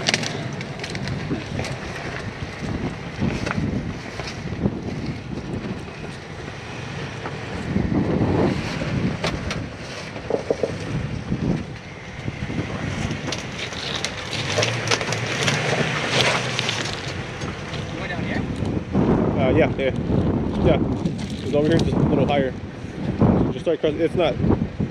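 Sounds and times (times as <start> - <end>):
tyres through water and mud: 0.0 - 23.4
truck engine rumble: 0.0 - 24.9.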